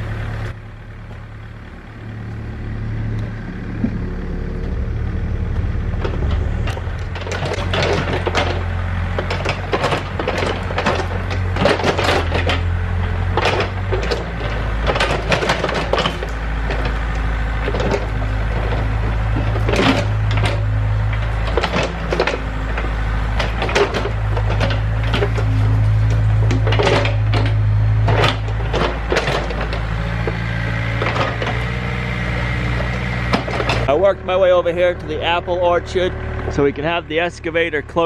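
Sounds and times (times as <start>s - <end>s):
excavator engine running: 0.0s - 38.0s
wood and roots cracking: 5.5s - 34.0s.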